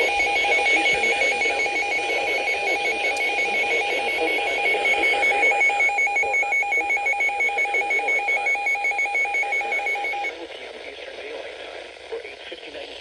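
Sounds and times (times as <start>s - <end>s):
two-tone electronic alert beeping: 0.0s - 10.3s
radio hiss: 10.1s - 13.0s.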